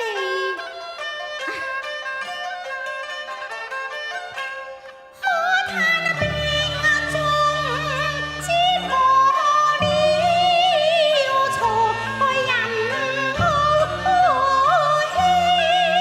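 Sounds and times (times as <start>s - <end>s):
opera music wavering melody: 5.2s - 16.0s.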